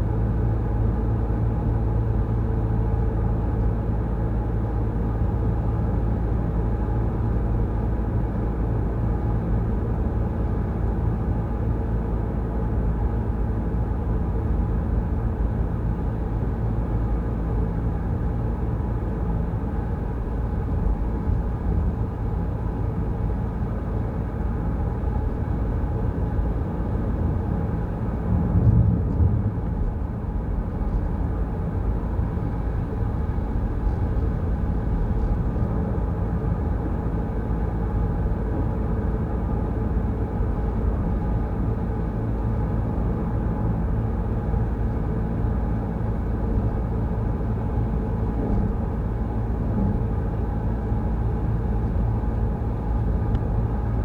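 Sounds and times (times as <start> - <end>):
car driving rumble: 25.2 - 37.4, 46.1 - 54.0.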